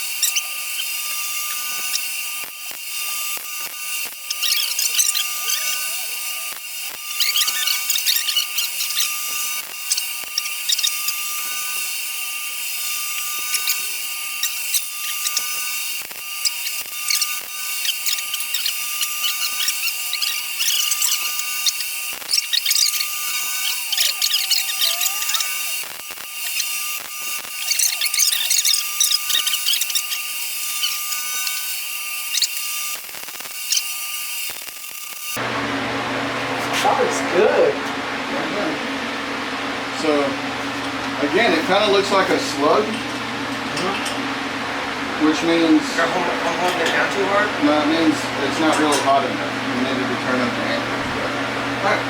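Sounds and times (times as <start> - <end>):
welding arc crackling and hissing: 0.0 - 35.4.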